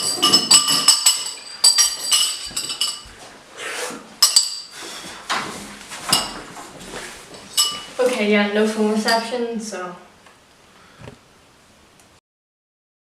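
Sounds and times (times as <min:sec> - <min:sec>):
dishes and cutlery clinking: 0:00.0 - 0:03.2, 0:04.2 - 0:06.6, 0:07.3 - 0:08.2, 0:09.0 - 0:09.4.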